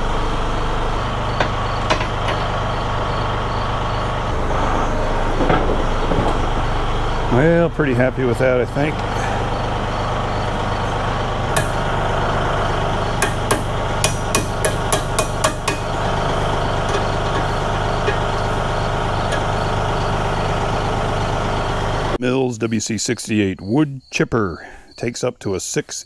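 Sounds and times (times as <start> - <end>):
tractor engine idling: 0.0 - 22.2
sharp knocks or clanks: 1.3 - 2.6, 10.0 - 20.1.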